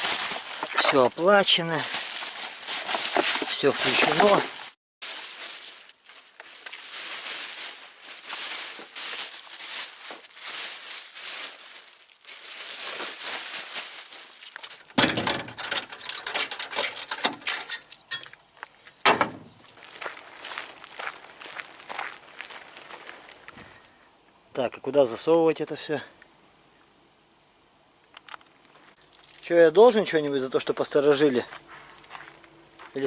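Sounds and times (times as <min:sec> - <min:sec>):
plastic film rustling: 0:00.0 - 0:15.0
clicking and crackling: 0:28.1 - 0:29.3.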